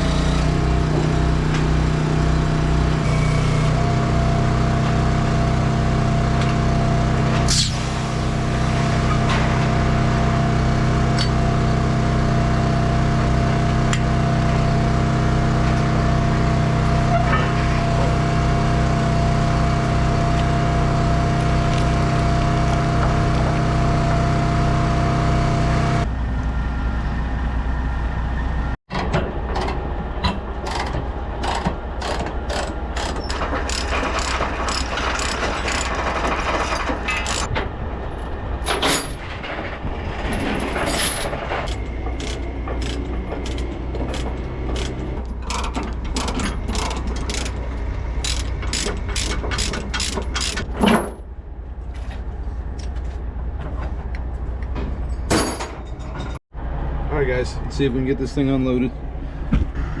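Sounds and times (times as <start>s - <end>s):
chain binder ratcheting clicks: 41.7s - 47.6s, 48.2s - 50.6s.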